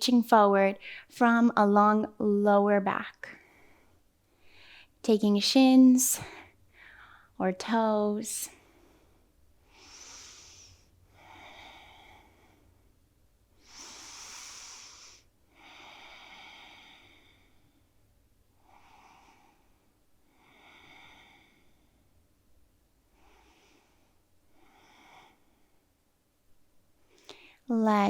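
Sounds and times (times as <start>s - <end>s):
slow breathing through nose: 6.7s - 7.3s, 8.6s - 12.9s, 13.6s - 17.9s.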